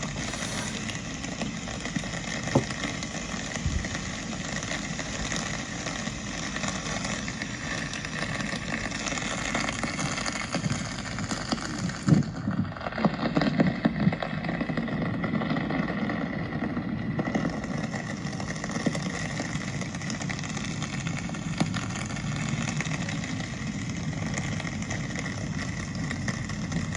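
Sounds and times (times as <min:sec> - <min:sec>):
steady rain hiss: 0:00.0 - 0:12.0.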